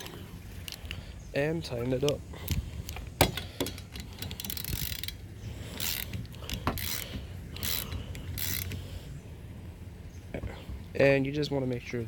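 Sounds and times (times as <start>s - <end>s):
ratchet wrench clicking: 2.5s - 8.9s.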